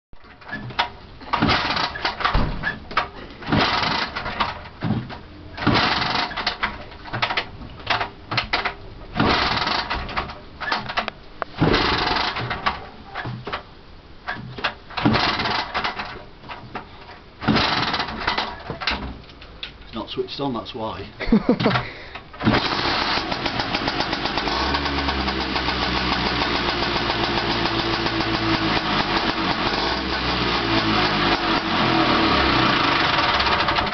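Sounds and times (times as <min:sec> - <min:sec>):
clanks and clicks: 0:00.2 - 0:13.7, 0:14.3 - 0:20.0
scooter being kick-started: 0:00.3 - 0:05.0, 0:05.6 - 0:12.8, 0:14.3 - 0:16.2, 0:17.4 - 0:19.0, 0:21.6 - 0:30.5, 0:31.3 - 0:33.9
scooter engine idling: 0:22.5 - 0:31.8.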